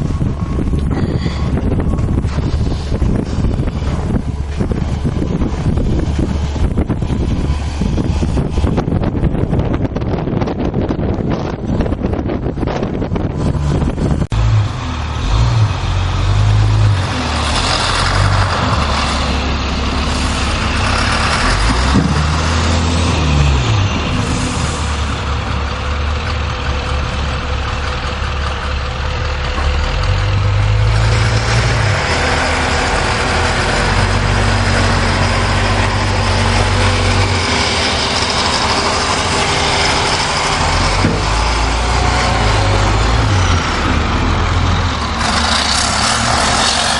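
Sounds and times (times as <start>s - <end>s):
steady rushing noise: 0.0s - 14.4s
vehicle engine humming: 0.0s - 46.9s.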